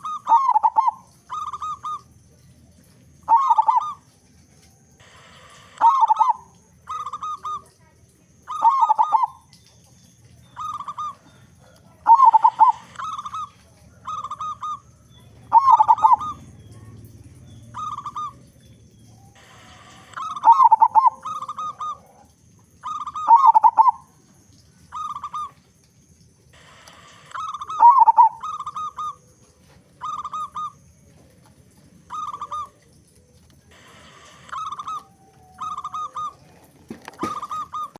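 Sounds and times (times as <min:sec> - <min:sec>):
dove cooing: 0:00.0 - 0:25.8, 0:26.5 - 0:37.9.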